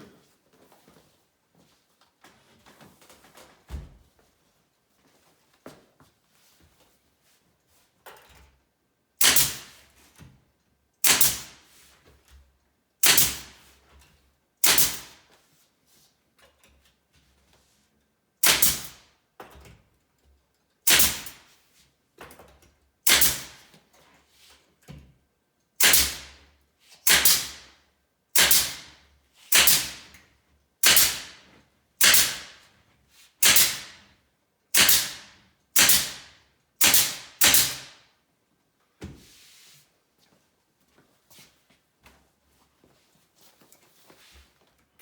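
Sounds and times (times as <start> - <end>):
staple gun firing: 29.6 - 30.0, 30.8 - 31.4, 32.0 - 32.6, 33.4 - 34.0, 34.8 - 38.0.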